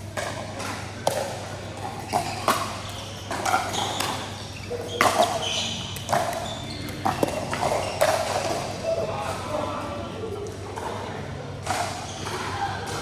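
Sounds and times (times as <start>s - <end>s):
shoe squeaks: 1.9s - 9.5s, 11.7s - 12.8s.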